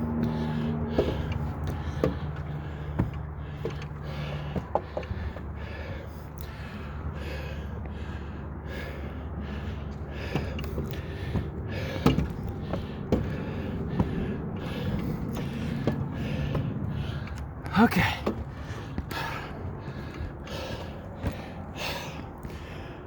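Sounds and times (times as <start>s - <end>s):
man breathing hard: 0.0s - 23.0s
footfalls on steps: 0.2s - 6.0s, 10.2s - 17.3s.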